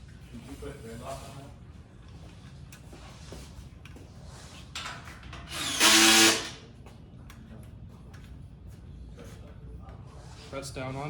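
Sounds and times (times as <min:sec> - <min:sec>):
small motor whirring: 0:05.5 - 0:06.6.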